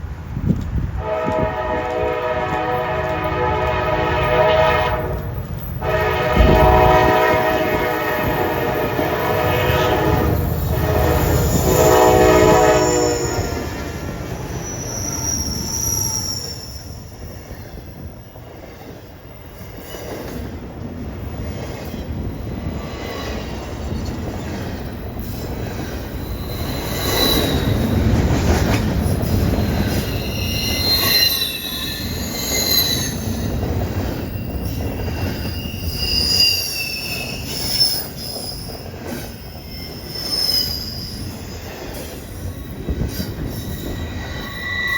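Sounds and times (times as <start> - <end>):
freight train rumbling: 0.0 - 44.9
train horn: 0.9 - 13.8
wheels squealing: 8.4 - 17.6, 25.2 - 44.9.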